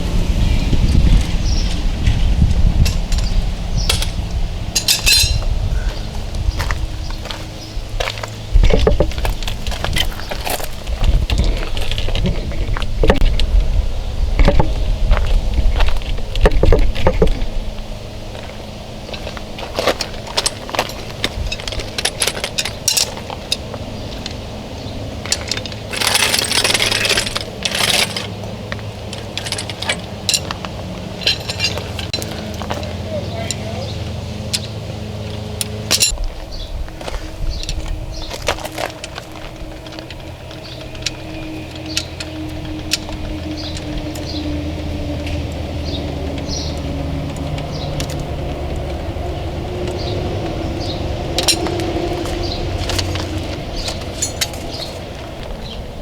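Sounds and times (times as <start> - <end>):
steady low hum: 0.0 - 56.0
vehicle engine running: 0.0 - 56.0
sharp metallic clinks: 2.8 - 5.5, 53.8 - 55.1
metal tools clinking and rattling: 2.8 - 6.1, 6.7 - 13.5, 18.4 - 24.4, 25.2 - 49.0, 50.8 - 55.8.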